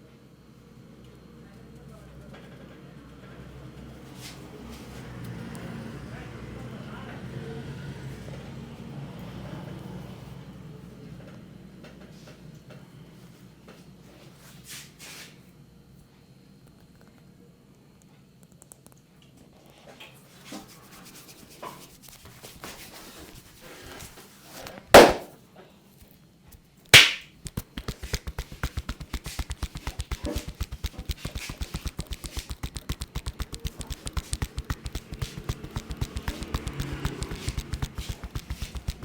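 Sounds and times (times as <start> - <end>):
rapid percussive hand tapping: 25.0 - 25.3, 27.0 - 39.0
sharp hand slaps: 25.0 - 25.3, 27.0 - 39.0
hands rubbing skin: 27.0 - 39.0.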